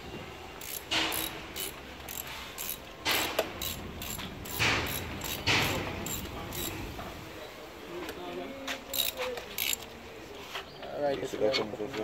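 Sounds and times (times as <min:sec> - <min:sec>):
metallic tool clicks: 0:00.6 - 0:06.7
metal tool scraping: 0:00.6 - 0:06.9.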